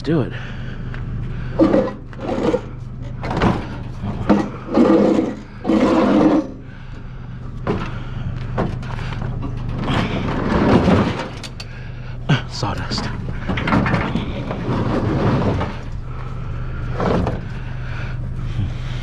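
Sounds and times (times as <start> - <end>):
steady low hum: 0.0 - 19.0
scrap metal knocks and clunks: 1.5 - 6.6, 7.6 - 11.7, 12.8 - 16.2.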